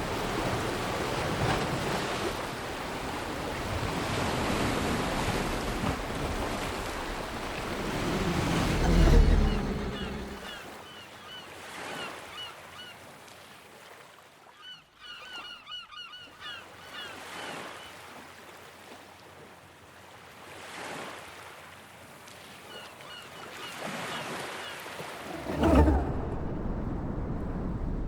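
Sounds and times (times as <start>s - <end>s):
loud whoosh: 7.2s - 10.6s, 25.3s - 28.0s
rushing noise: 7.2s - 10.6s.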